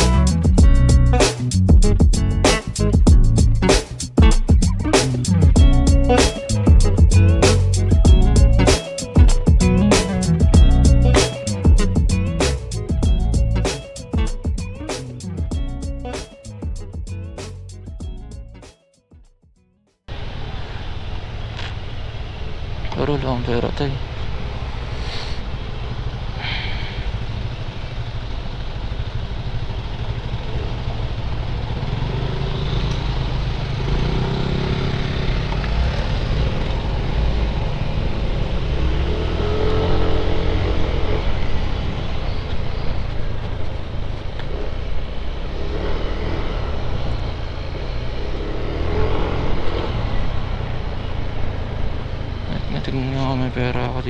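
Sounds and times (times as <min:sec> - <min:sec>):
motorcycle engine running: 0:00.0 - 0:18.6, 0:20.1 - 0:54.0
wind and road noise: 0:20.1 - 0:54.0.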